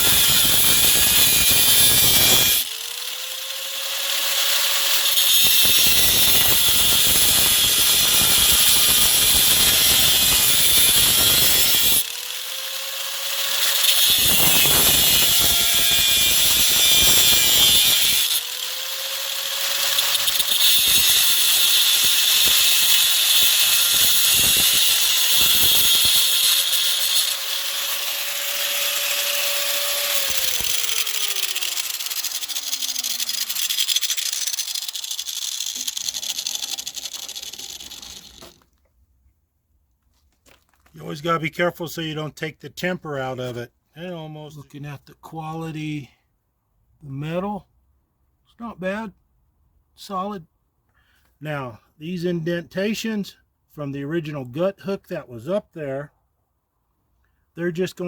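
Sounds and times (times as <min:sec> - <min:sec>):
power tool grinding steel: 0:00.0 - 0:38.6.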